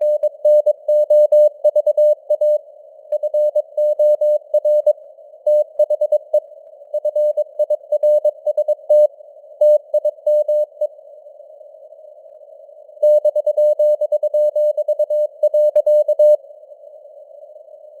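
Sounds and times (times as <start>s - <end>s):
morse code beeps: 0.0s - 2.6s, 3.2s - 4.9s, 5.5s - 6.4s, 7.0s - 10.9s, 13.0s - 16.4s.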